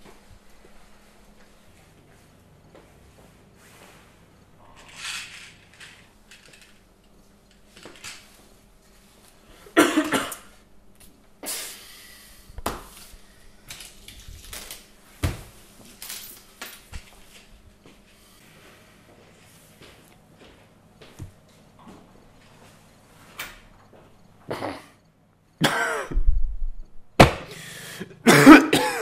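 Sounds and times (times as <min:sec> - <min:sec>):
small objects clinking and knocking: 0:04.8 - 0:08.3
person coughing: 0:09.7 - 0:10.5, 0:24.5 - 0:25.0, 0:25.6 - 0:26.2, 0:27.9 - 0:29.0.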